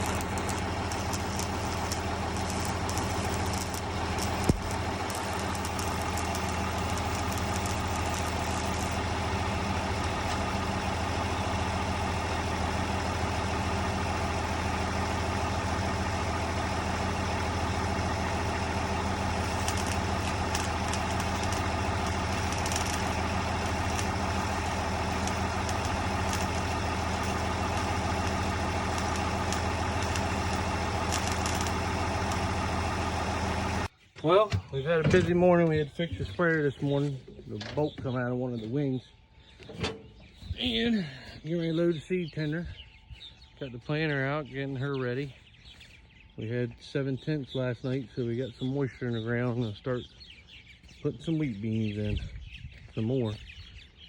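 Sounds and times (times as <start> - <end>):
vehicle engine idling: 0.0 - 54.0
sharp click: 19.6 - 24.2, 29.0 - 32.4.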